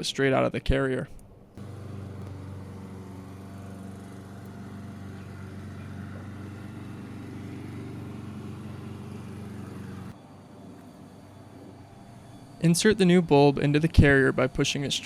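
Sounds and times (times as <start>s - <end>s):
car engine idling: 1.4s - 10.2s.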